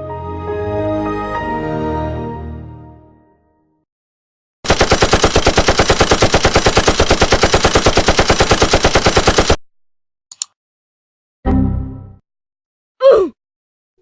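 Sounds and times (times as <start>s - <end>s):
automatic gunfire: 4.6s - 9.6s.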